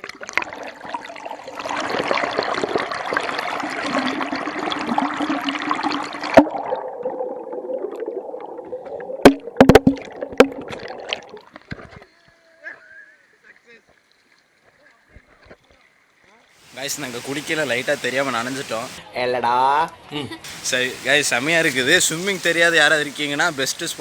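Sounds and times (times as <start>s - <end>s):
water splashing and rushing: 16.6s - 19.0s, 20.5s - 24.0s
muffled low water sound: 20.5s - 24.0s.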